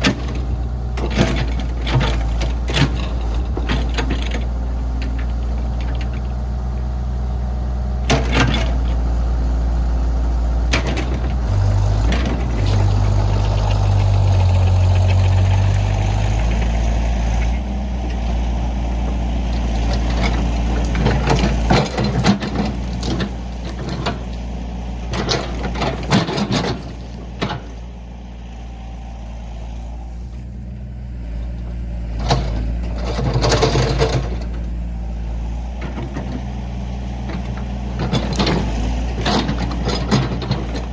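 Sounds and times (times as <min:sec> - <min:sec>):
excavator diesel engine running: 0:00.0 - 0:40.9
metallic clanks and knocks: 0:19.5 - 0:27.8.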